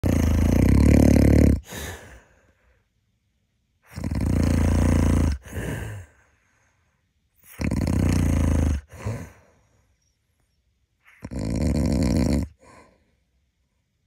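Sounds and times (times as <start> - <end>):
man snoring loudly: 0.0 - 2.3, 3.9 - 6.2, 7.4 - 9.4, 11.1 - 12.8
soft breath: 1.6 - 3.1, 5.4 - 7.2, 8.8 - 10.3, 12.6 - 14.0.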